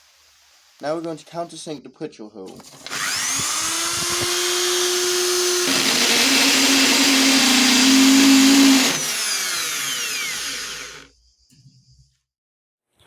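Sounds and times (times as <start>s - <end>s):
electric drill grinding into steel: 2.6s - 11.1s.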